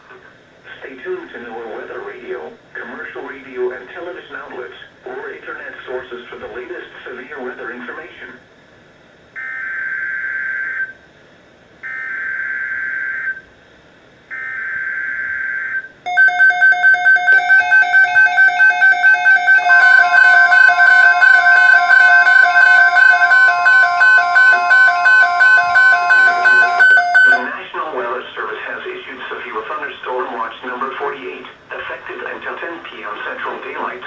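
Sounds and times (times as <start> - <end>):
digital data bursts: 16.1 - 27.5
rapidly beeping electronic alert tone: 16.1 - 27.5
steady tone: 16.1 - 27.6.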